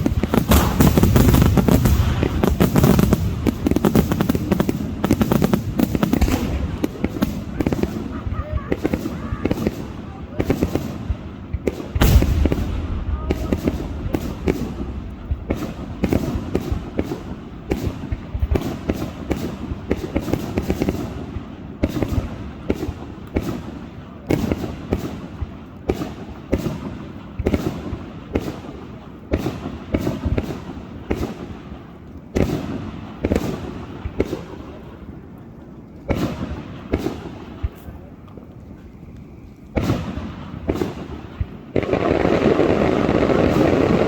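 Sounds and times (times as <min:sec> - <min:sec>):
fireworks bangs and booms: 0:00.0 - 0:44.0.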